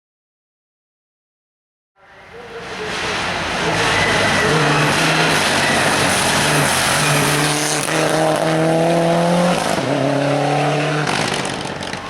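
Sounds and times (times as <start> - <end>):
race car engine accelerating: 2.5 - 12.0.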